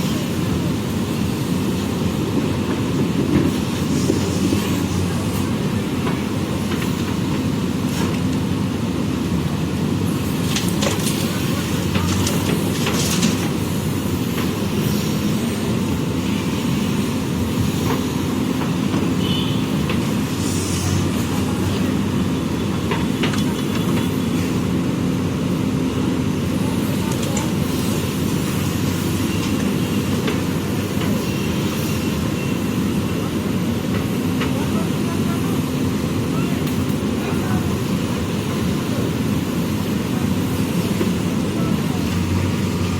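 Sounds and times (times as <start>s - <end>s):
diesel engine running: 0.0s - 42.9s.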